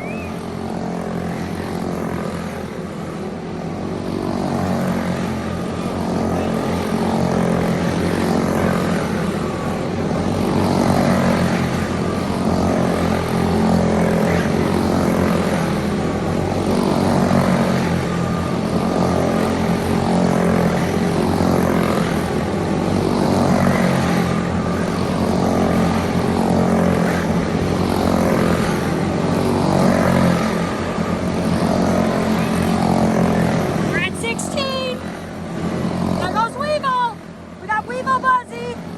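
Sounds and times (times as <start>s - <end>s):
racing kart engines: 0.0s - 38.9s.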